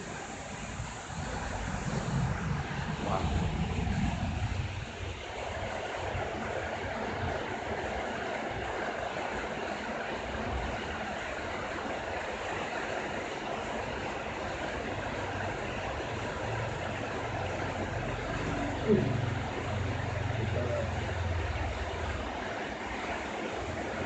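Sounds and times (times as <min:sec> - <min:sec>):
low uneven rumble: 0:00.0 - 0:08.6, 0:13.7 - 0:24.0
steady rain hiss: 0:00.0 - 0:24.0.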